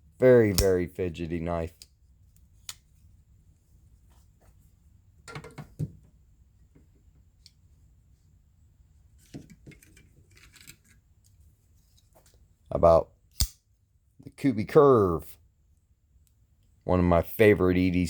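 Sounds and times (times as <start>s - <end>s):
pocket knives clicking and clinking: 0.5s - 0.7s.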